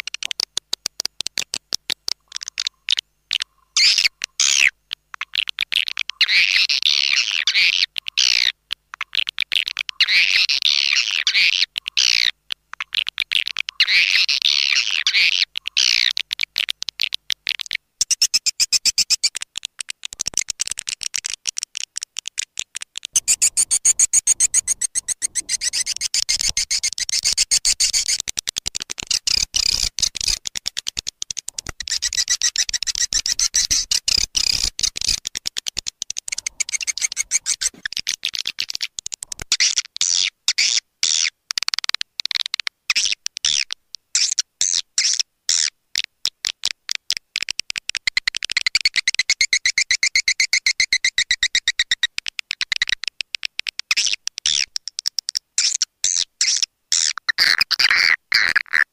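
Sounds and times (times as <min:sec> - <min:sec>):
swiftlets twittering chirps: 0:23.2 - 0:28.2, 0:31.6 - 0:35.2, 0:36.2 - 0:38.8.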